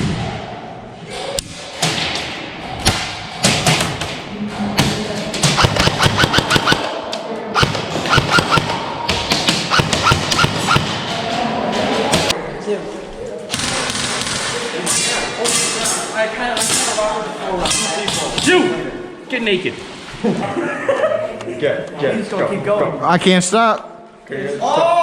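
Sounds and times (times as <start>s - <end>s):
airsoft guns firing: 5.4s - 7.0s, 7.6s - 11.1s, 13.5s - 14.7s.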